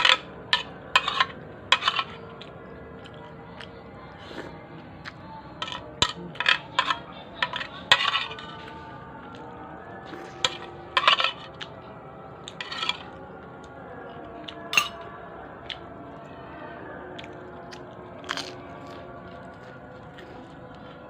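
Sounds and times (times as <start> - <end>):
cutlery clinking on a plate: 0.0 - 2.5, 5.6 - 8.7, 10.4 - 11.7, 12.5 - 13.2, 14.5 - 15.1.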